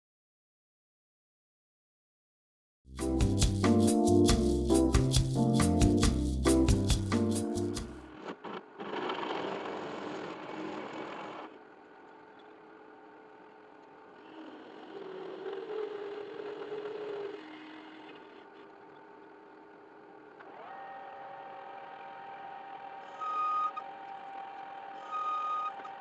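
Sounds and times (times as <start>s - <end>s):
motorised machine running: 8.8s - 26.0s.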